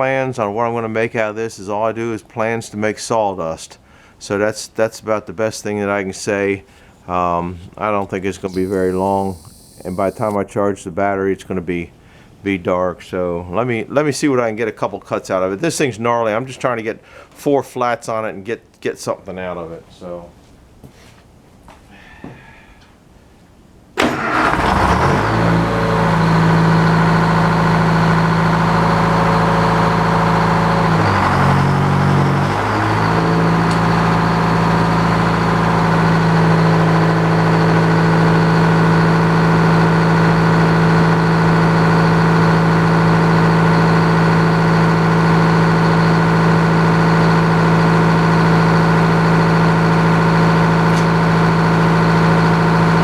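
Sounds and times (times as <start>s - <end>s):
sawmill engine running: 8.5s - 10.4s, 24.3s - 35.7s.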